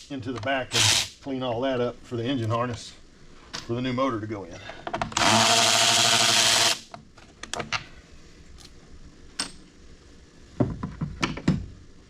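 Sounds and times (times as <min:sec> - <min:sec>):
power drill running: 0:00.7 - 0:01.1, 0:05.2 - 0:06.9.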